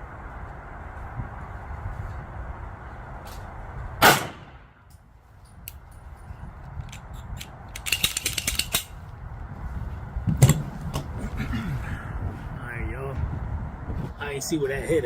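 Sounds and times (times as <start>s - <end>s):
pistol shots: 4.0s - 4.7s
rattle of small metallic clicks: 4.9s - 8.9s.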